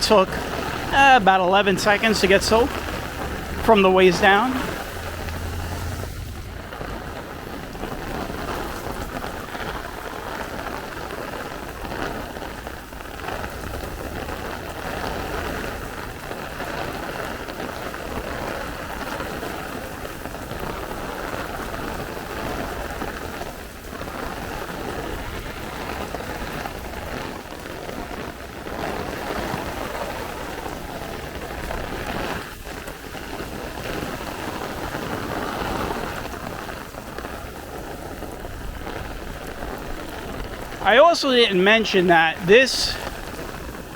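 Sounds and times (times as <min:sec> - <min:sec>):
heavy rain pouring: 0:00.0 - 0:43.9
low thunder rumble: 0:00.2 - 0:18.3.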